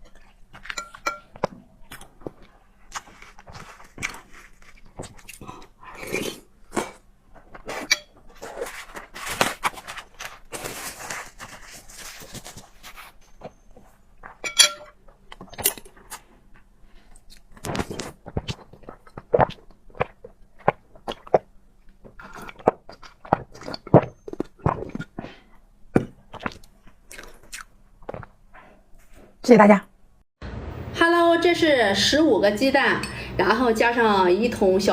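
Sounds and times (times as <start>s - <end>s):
wet mouth eating noises: 0.0s - 9.1s, 15.1s - 28.4s
quick sharp chewing: 1.9s - 14.4s, 22.1s - 29.1s
short ringing clink: 14.5s - 14.9s.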